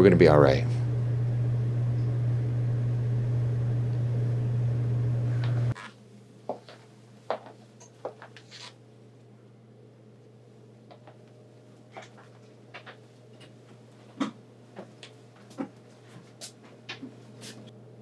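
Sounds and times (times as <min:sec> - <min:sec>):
steady low hum: 0:00.0 - 0:05.8.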